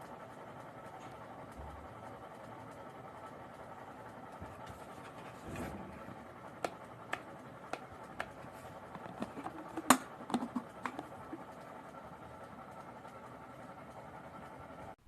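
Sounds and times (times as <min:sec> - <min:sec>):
objects clicking and tapping: 0:06.6 - 0:11.4.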